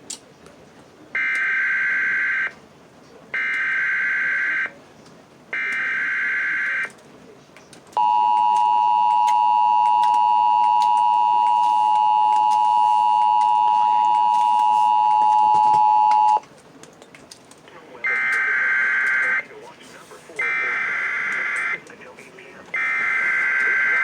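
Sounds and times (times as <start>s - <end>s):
two-tone alarm: 1.2s - 2.5s, 3.4s - 4.7s, 5.6s - 6.9s, 8.0s - 16.4s, 18.1s - 19.4s, 20.4s - 21.8s, 22.8s - 24.0s.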